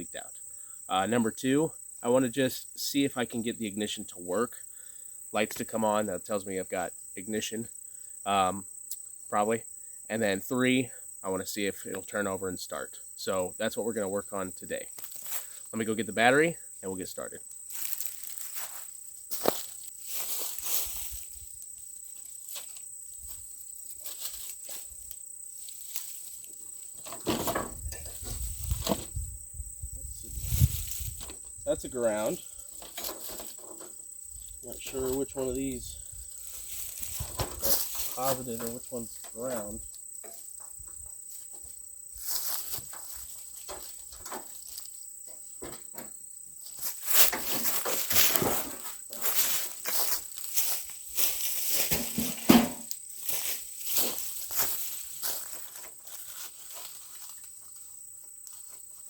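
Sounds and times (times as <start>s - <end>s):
high-pitched insect drone: 12.7s - 51.8s
footsteps: 17.7s - 29.2s, 30.1s - 59.0s
knocks and rustling: 26.0s - 29.3s, 32.7s - 34.0s, 36.5s - 41.8s, 42.4s - 50.7s, 51.6s - 53.0s
handling noise: 30.2s - 35.6s, 36.4s - 57.5s.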